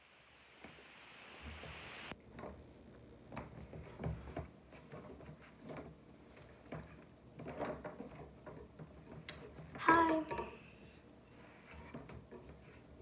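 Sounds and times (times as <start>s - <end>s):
faint hiss: 0.0s - 2.1s.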